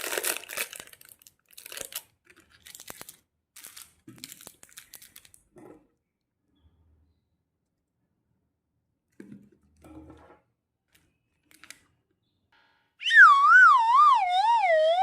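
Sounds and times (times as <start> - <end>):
cartoon wobbling descending tone: 13.0 - 15.0.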